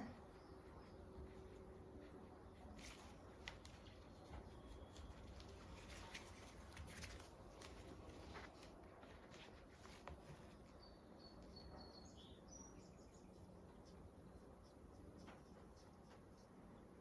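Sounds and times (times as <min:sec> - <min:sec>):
faint high chirps: 0:10.8 - 0:13.2.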